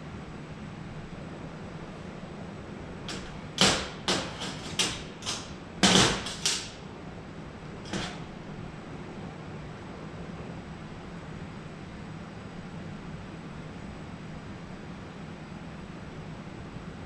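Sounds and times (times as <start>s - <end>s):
sharp knocks and clatters: 3.1s - 6.8s, 7.8s - 8.4s.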